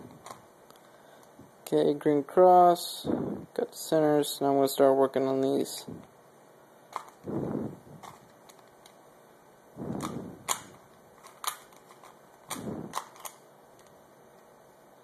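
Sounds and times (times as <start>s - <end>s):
cube rattling in hands: 9.9s - 13.4s
plastic cube clicking as twisted: 10.0s - 13.9s.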